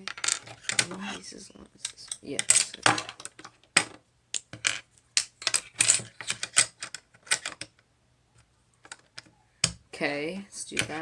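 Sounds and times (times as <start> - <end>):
plastic bricks clicking and clattering: 0.0 - 1.2, 1.8 - 7.8, 8.8 - 9.8.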